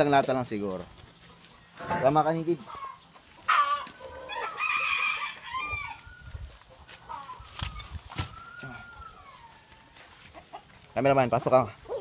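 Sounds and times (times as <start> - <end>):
chickens clucking: 0.0 - 12.0
rooster crowing: 3.5 - 6.1.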